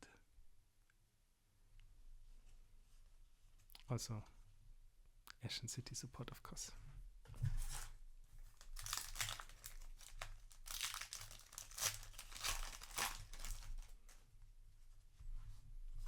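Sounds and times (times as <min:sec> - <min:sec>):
foil wrapper crinkling and tearing: 0:08.5 - 0:14.2.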